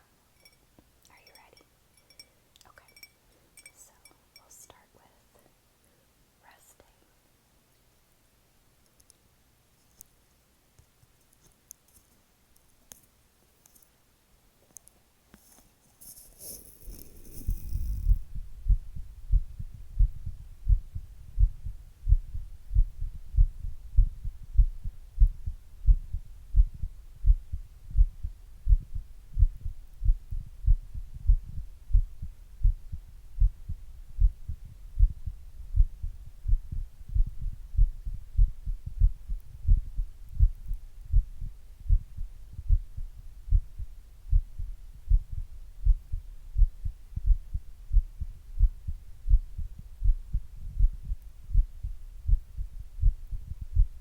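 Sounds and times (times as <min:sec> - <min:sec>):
rustling handling noise: 0:14.6 - 0:18.2
heartbeat thumps: 0:17.4 - 0:54.0.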